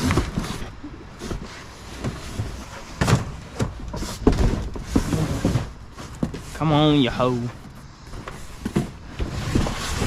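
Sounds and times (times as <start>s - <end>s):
knocks and thumps: 0.0s - 6.6s.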